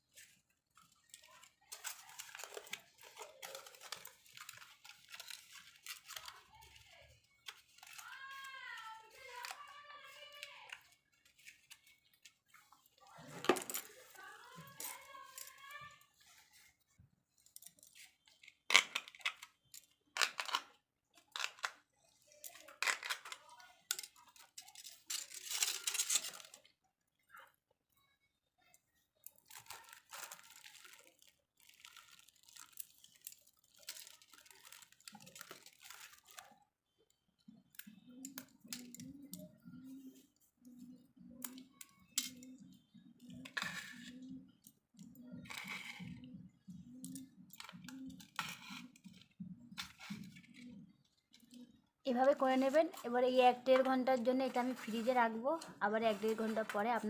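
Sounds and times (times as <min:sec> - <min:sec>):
aluminium foil crinkling: 0:00.0 - 0:16.7, 0:17.4 - 0:26.7, 0:28.9 - 0:39.4, 0:47.0 - 0:57.0.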